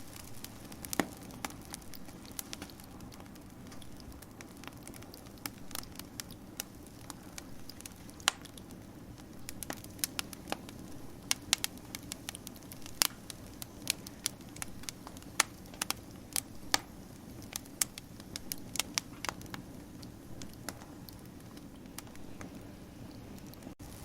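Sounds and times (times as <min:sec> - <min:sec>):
soft rumble of burning fire: 0:00.0 - 0:24.0
wood fire crackling: 0:00.0 - 0:24.0.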